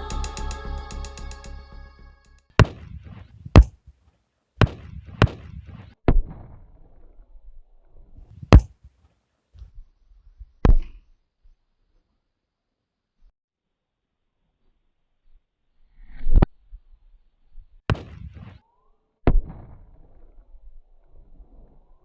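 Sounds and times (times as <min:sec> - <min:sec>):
firecracker bangs: 0:02.6 - 0:03.7.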